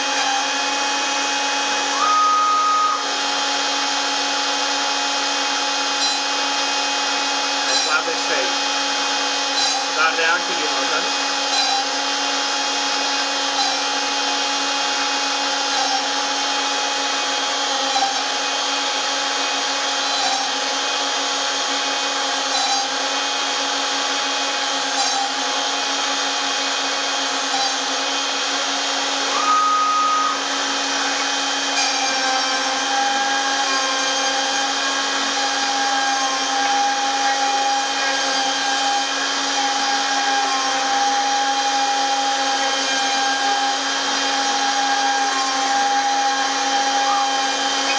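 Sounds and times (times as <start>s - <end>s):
router spindle whine: 0.0s - 47.9s.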